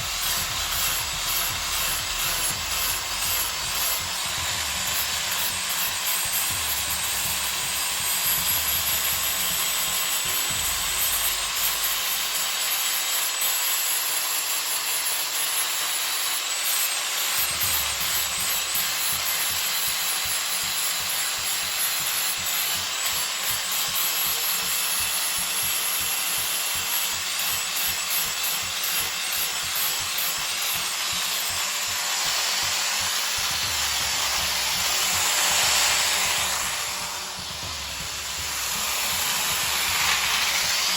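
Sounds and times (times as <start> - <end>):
power sander grinding wood: 0.0 - 12.6, 16.4 - 40.9.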